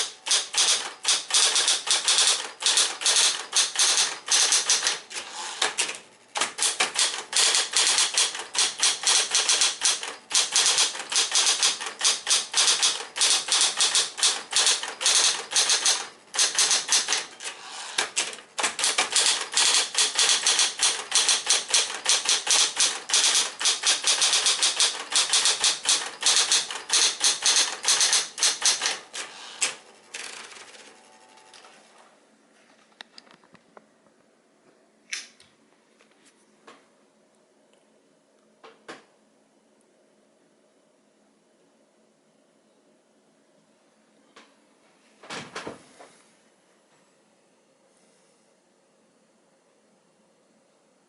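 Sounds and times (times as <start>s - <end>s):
electric typewriter typing: 0.0s - 31.0s
faint steady hum: 29.0s - 51.0s.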